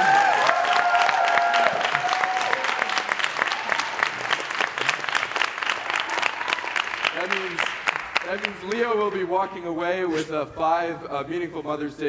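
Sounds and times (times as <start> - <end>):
audience applauding and cheering: 0.0 - 9.2.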